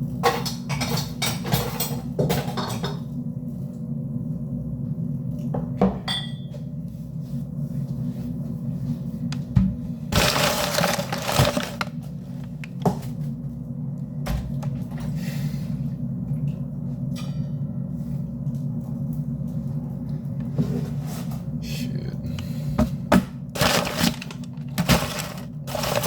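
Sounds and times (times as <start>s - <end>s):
utensils and containers clattering: 0.2s - 3.0s, 10.2s - 12.8s, 23.6s - 26.0s
steady low hum: 1.8s - 26.0s.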